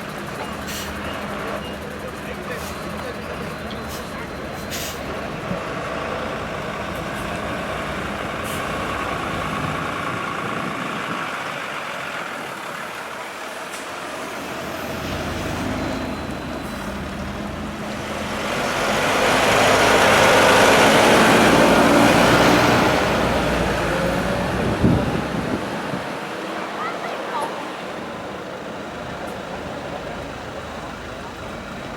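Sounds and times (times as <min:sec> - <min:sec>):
fire engine motor running: 0:00.0 - 0:31.9.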